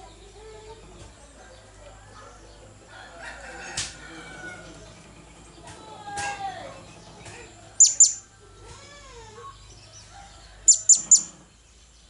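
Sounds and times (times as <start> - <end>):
parrot high-pitched calls: 7.8 - 8.3, 10.7 - 11.4
faint lower bird calls: 7.8 - 9.8, 10.6 - 11.6.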